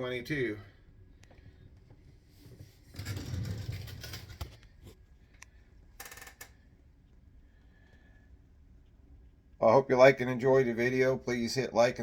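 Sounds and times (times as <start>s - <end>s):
rustling scrape: 2.3s - 5.0s.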